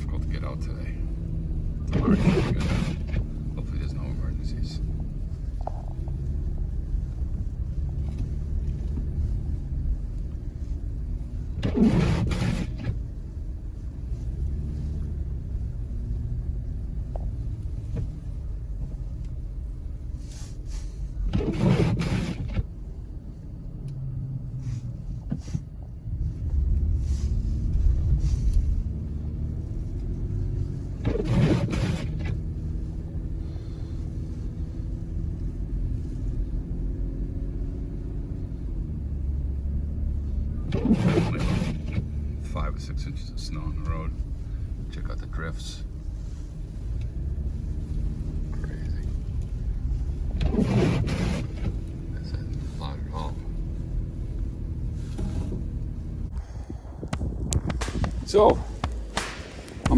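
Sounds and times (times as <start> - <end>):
vehicle driving through snow: 0.0 - 59.9
brief swish: 57.7 - 59.9.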